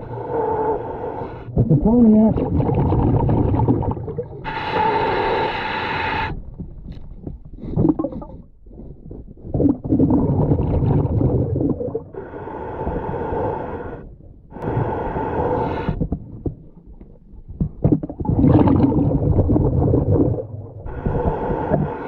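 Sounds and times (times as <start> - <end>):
diver breathing through a regulator: 0.0 - 1.7, 2.5 - 6.6, 7.5 - 16.5, 18.4 - 22.0
gurgling bubbles: 1.5 - 4.8, 6.5 - 8.5, 9.1 - 12.2, 15.8 - 22.0.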